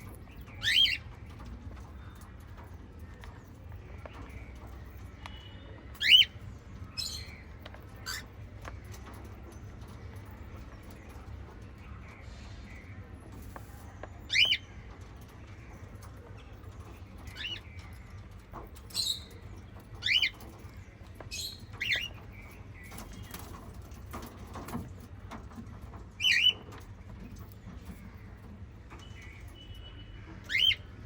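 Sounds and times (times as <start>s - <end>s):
parrots chirping: 0.0s - 1.5s, 5.4s - 10.4s, 18.8s - 20.7s, 21.3s - 23.4s, 26.2s - 26.7s, 29.0s - 31.0s.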